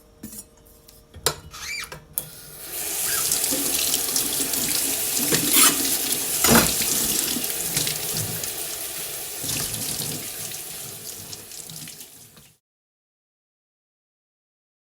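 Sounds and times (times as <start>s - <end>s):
tap water running into sink: 2.6s - 12.6s.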